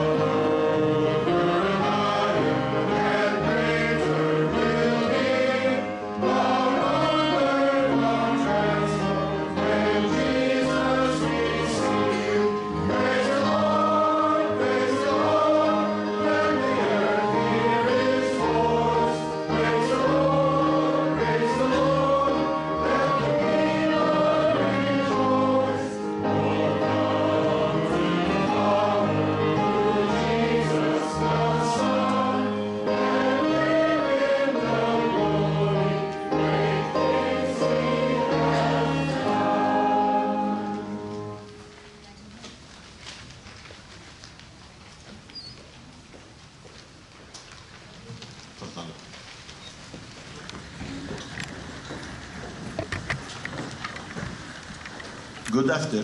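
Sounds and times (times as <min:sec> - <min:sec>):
choir singing a hymn: 0:00.0 - 0:41.7
instrumental accompaniment: 0:00.0 - 0:42.4.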